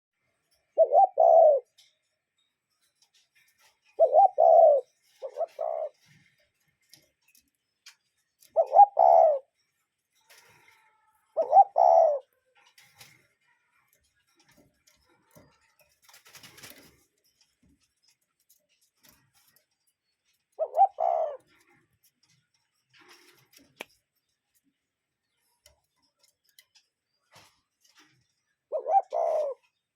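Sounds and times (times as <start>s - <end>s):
cuckoo calling: 0.8s - 1.7s, 4.0s - 6.0s, 8.5s - 9.5s, 11.4s - 12.3s, 20.6s - 21.5s, 28.7s - 29.7s.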